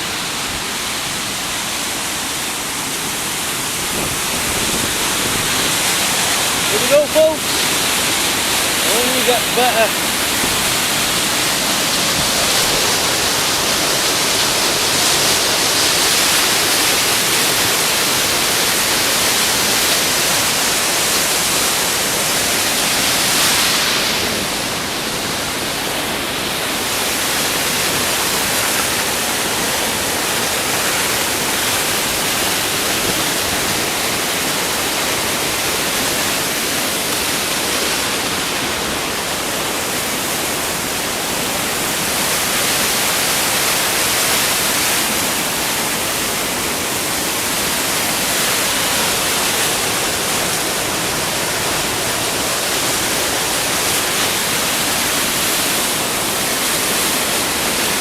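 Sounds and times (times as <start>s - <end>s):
waterfall rushing: 0.0s - 58.0s.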